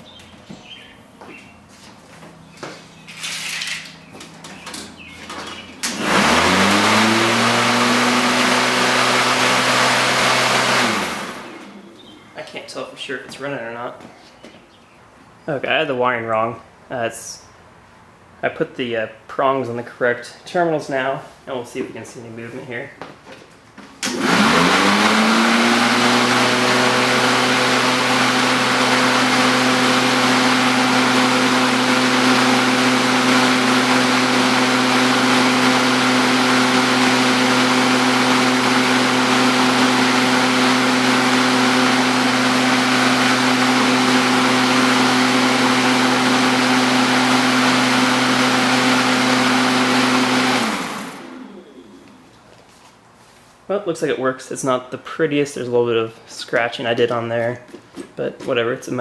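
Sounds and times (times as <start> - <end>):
electric lawn mower humming: 5.3 - 12.1, 24.0 - 52.2.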